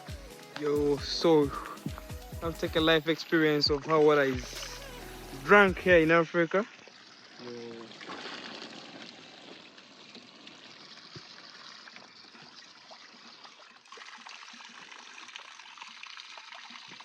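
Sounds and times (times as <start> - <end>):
small water splashes: 0.0 - 17.0
stream water trickling: 0.0 - 17.0.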